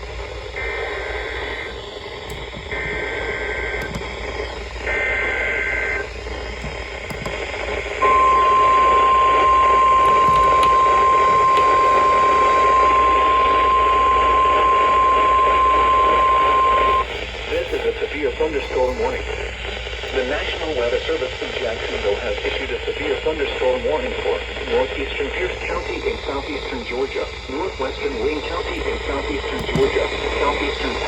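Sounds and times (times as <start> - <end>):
radio hiss: 0.0 - 31.0
steady warning alarm tone: 0.5 - 21.6.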